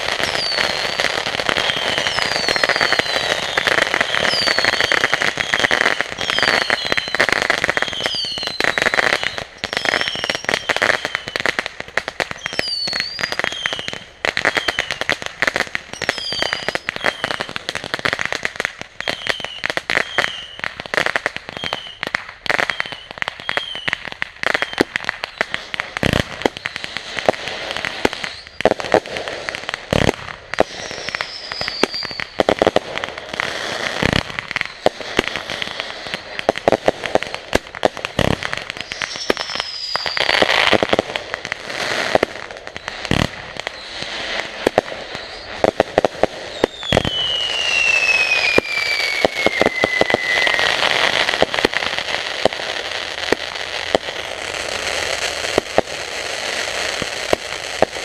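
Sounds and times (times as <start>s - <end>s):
fireworks crackling: 0.0s - 58.0s
fireworks falling whistles: 0.0s - 58.0s.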